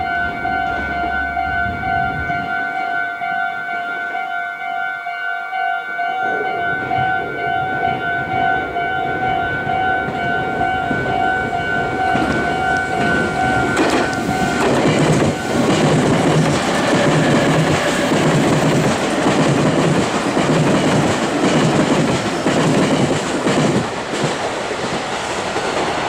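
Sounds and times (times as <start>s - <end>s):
electric train rumbling: 0.0s - 4.8s, 6.0s - 26.0s
level crossing bell ringing: 0.0s - 15.7s.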